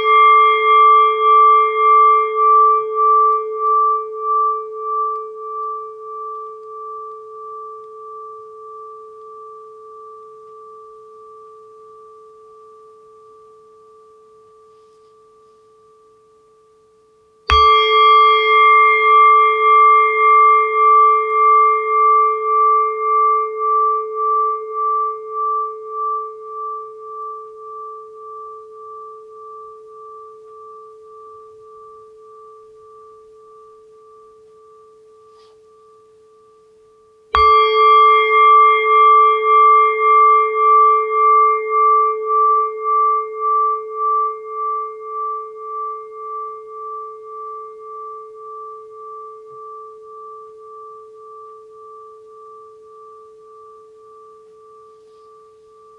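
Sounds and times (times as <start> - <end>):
singing bowl ringing: 0.0 - 55.9.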